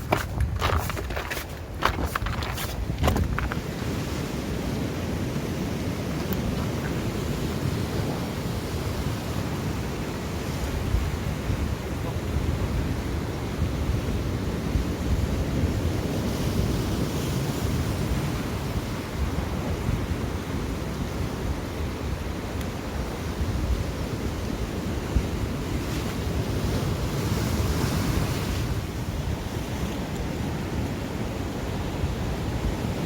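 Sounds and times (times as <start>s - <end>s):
waves washing against rocks: 0.0s - 20.6s
wind buffeting microphone: 0.0s - 33.0s.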